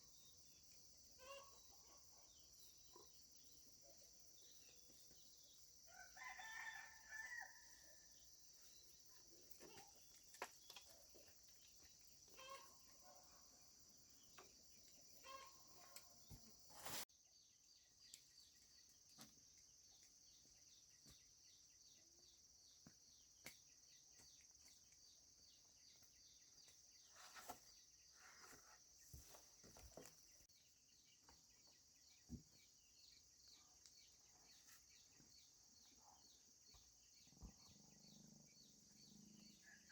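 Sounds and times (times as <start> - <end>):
insects chirring: 0.0 - 17.0.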